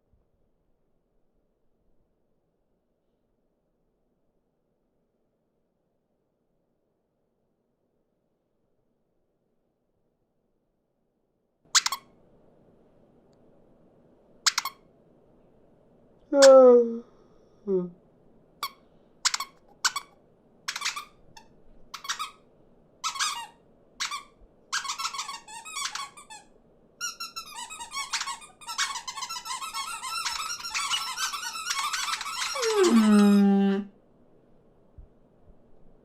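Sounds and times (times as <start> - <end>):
cartoon birds chirping: 11.8 - 12.0, 32.4 - 33.7.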